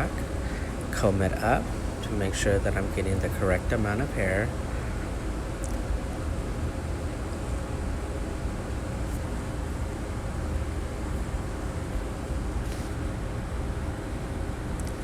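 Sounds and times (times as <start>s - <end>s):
faint constant hum: 0.0s - 15.0s
low machine room rumble: 0.0s - 15.0s.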